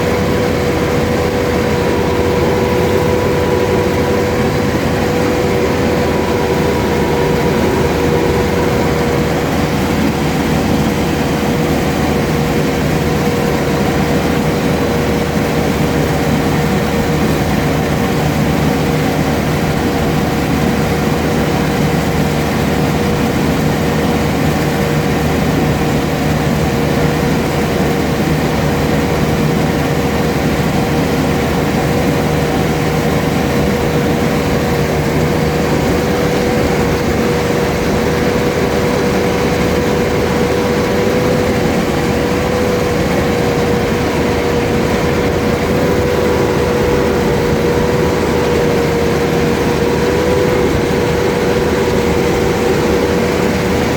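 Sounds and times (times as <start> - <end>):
combine harvester running: 0.0 - 53.9.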